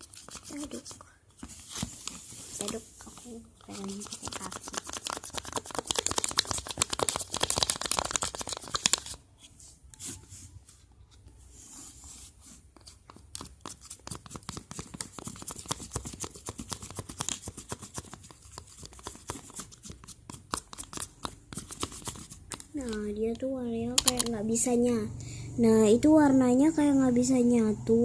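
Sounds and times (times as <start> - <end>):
sticky crackles of slime stirring: 0.0 - 1.2, 2.2 - 9.2, 12.4 - 23.5.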